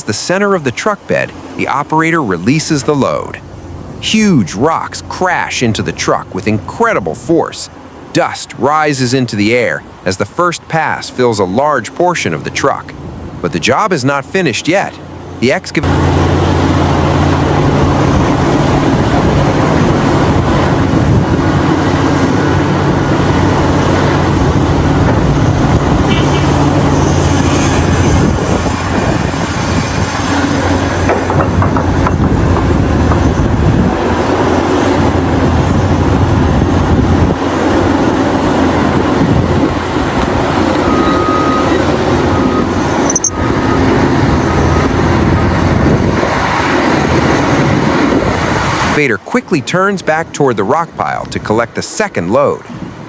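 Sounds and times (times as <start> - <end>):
excavator engine rumbling: 0.0 - 49.3.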